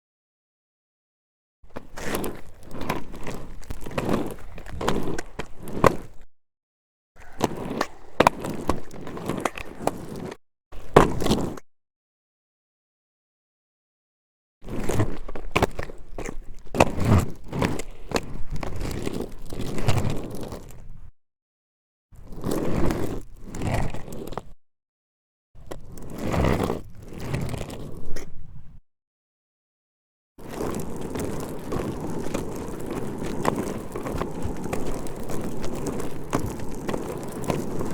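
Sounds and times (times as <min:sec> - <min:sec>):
skateboard wheels rolling: 0:01.7 - 0:06.2, 0:07.2 - 0:11.6, 0:14.6 - 0:21.1, 0:22.2 - 0:24.6, 0:25.6 - 0:28.8, 0:30.4 - 0:37.9.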